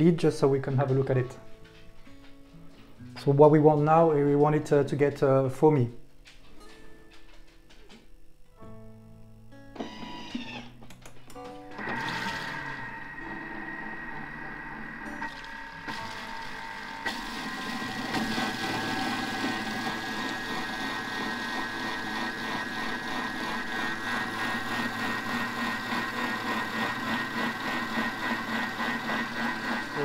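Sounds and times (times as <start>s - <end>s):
food processor motor whine: 9.8s - 10.7s, 11.7s - 30.0s.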